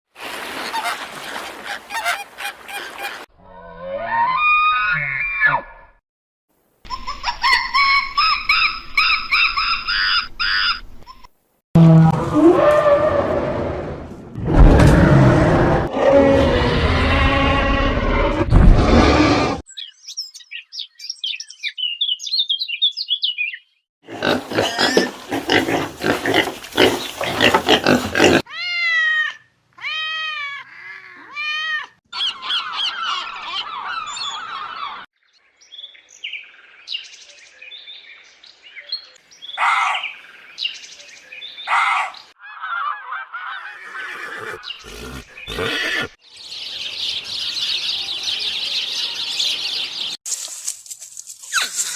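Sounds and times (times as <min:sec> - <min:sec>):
rising and falling animal calls: 0:00.7 - 0:06.0, 0:06.9 - 0:19.6, 0:24.2 - 0:35.1, 0:41.7 - 0:46.2
harsh noisy animal cry: 0:42.7 - 0:46.2.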